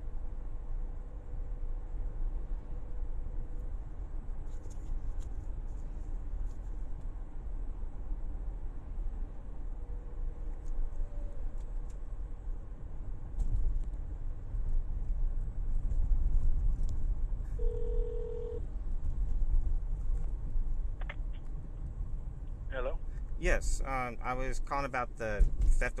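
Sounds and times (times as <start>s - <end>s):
low rumble on phone line: 17.4s - 24.6s
faint phone tone: 17.6s - 18.6s.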